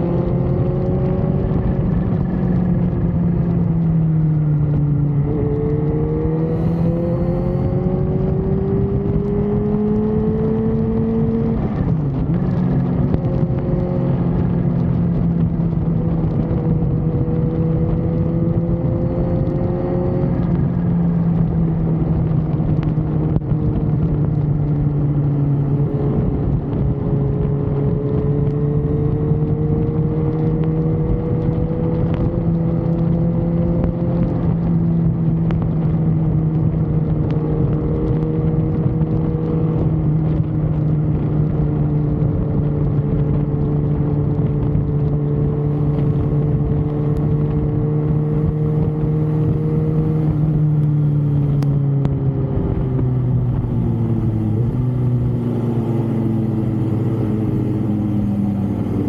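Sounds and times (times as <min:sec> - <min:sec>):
road noise: 0:00.0 - 0:59.0
vehicle engine running: 0:00.0 - 0:59.0.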